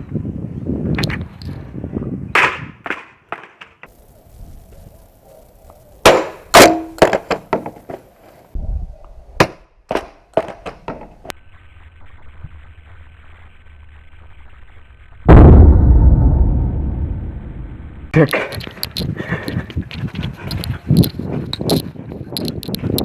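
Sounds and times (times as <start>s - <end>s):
helmet hitting hard ground: 2.4s - 3.9s, 6.0s - 8.1s, 9.4s - 11.4s
loud low rumble: 11.5s - 18.2s.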